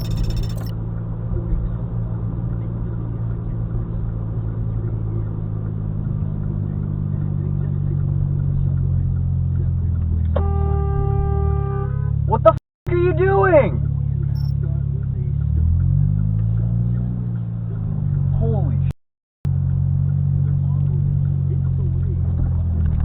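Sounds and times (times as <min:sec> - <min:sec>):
car engine drone inside vehicle: 0:00.0 - 0:12.5, 0:19.5 - 0:23.0
road noise: 0:00.0 - 0:18.9.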